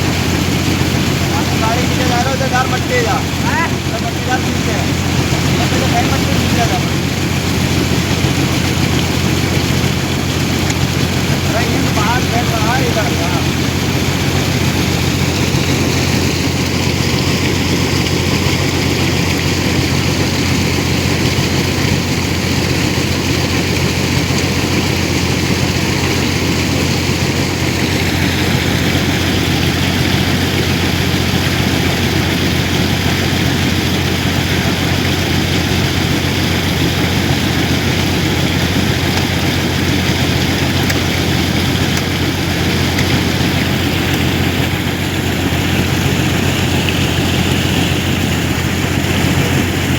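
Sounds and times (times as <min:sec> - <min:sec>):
air compressor running: 0:00.0 - 0:49.9.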